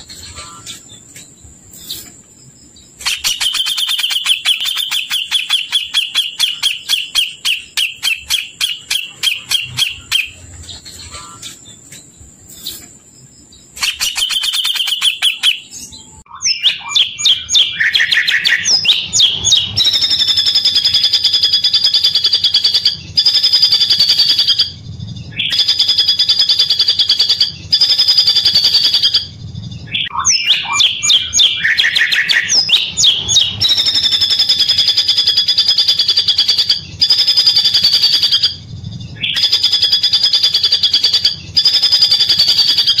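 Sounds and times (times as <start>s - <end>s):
songbird trilling: 0.0s - 43.0s.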